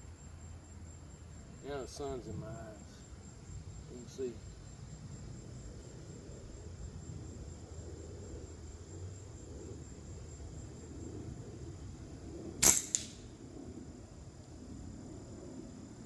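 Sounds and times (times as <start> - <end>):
gunshot: 12.6 - 13.2
faint second crack: 12.6 - 13.3.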